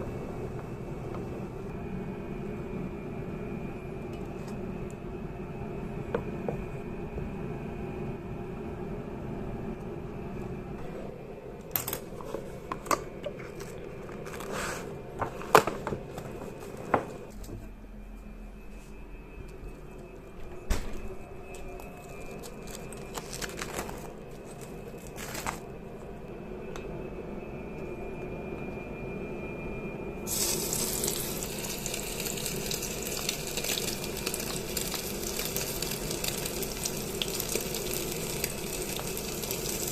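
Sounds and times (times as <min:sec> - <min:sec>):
steady hum: 0:00.0 - 0:39.9
hot oil sizzling: 0:30.3 - 0:39.9.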